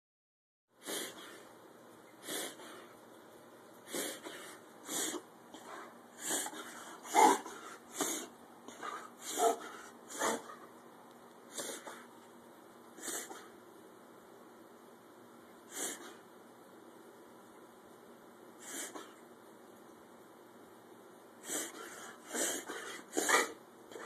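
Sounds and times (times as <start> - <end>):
dog breathy puffs: 3.9 - 10.7, 11.5 - 12.1, 13.0 - 13.5, 15.7 - 16.2, 18.6 - 19.2, 21.4 - 24.0.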